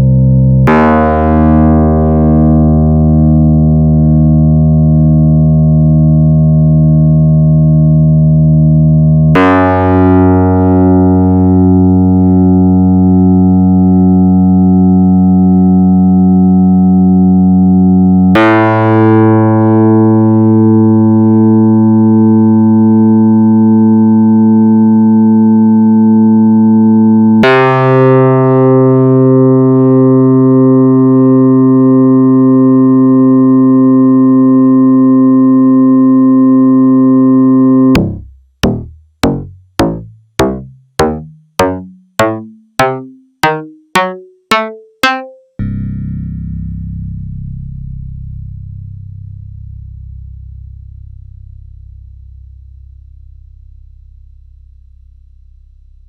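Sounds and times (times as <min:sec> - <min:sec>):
synthesizer bass notes: 0:37.9 - 0:46.0.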